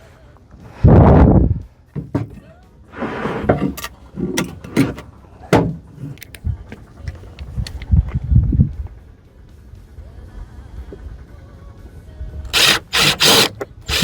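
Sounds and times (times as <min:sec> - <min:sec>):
dull thumps: 0:02.0 - 0:02.5, 0:03.4 - 0:06.2
board scraping: 0:02.0 - 0:06.2
tools knocking and clicking: 0:03.6 - 0:05.0.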